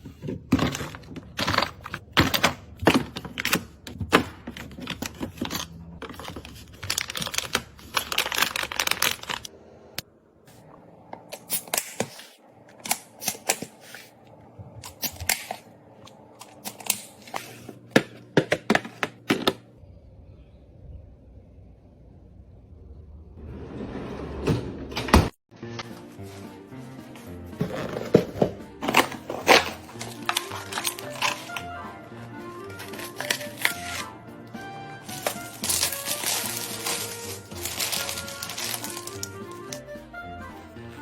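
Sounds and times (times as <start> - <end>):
packets clicking and tapping: 0.5 - 9.4, 27.6 - 31.9, 32.6 - 40.0
packet crinkling: 5.1 - 9.5, 28.8 - 31.8, 32.6 - 34.1, 35.0 - 39.8.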